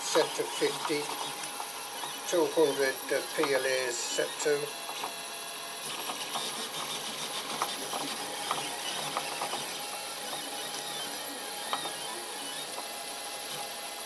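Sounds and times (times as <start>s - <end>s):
printer stepper motors whirring: 0.0s - 14.0s
small printer clicks: 5.8s - 12.9s.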